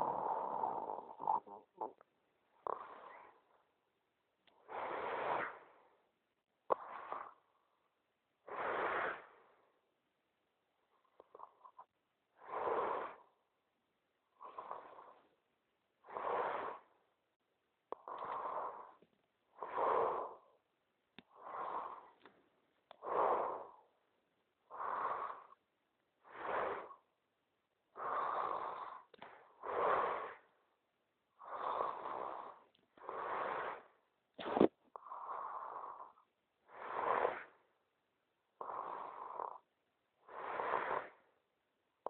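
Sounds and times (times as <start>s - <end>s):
man snoring: 0.0s - 2.0s.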